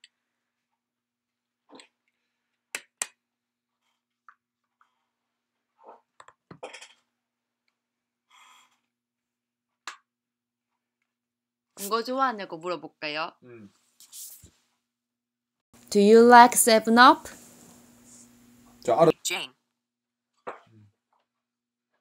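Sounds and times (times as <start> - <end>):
faint steady hum: 15.8 - 19.1.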